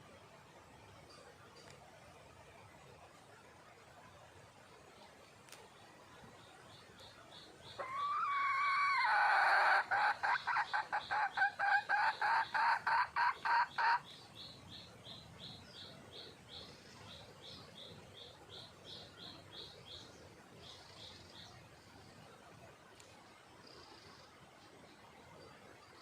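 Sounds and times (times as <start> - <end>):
junglefowl hen clucking: 7.6 - 14.2.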